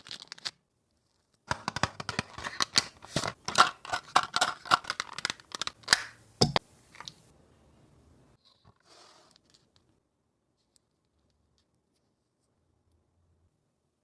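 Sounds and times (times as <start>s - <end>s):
packaging crackling and clicking: 0.0s - 0.6s, 1.4s - 6.2s
packaging rustling: 0.0s - 0.6s, 1.5s - 6.2s.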